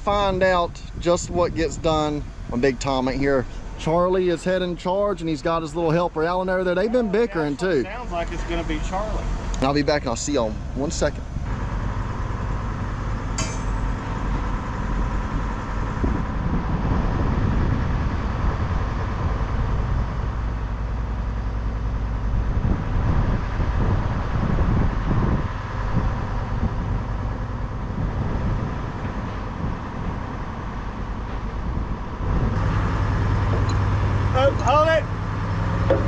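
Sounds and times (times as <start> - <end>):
engine running steadily: 0.0 - 36.0
sharp metallic clink: 13.3 - 14.1.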